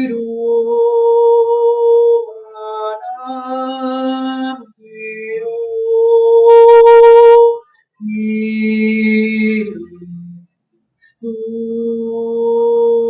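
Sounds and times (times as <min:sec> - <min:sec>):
wordless singing of long held notes: 0:11.2 - 0:13.0.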